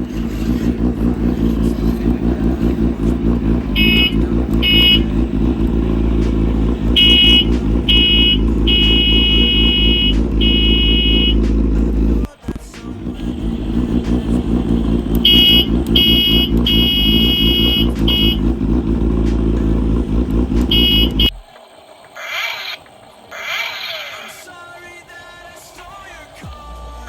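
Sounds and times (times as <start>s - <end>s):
motorcycle engine rumble: 0.0s - 22.1s
short high beeps: 3.7s - 5.2s, 6.8s - 11.4s.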